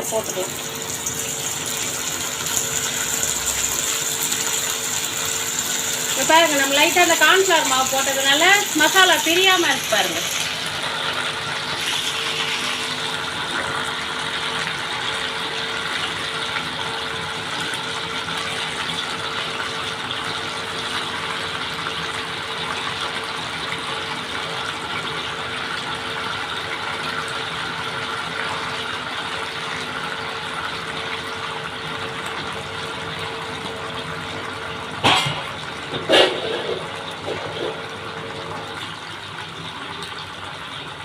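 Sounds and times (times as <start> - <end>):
oil sizzling and crackling: 0.0 - 20.0.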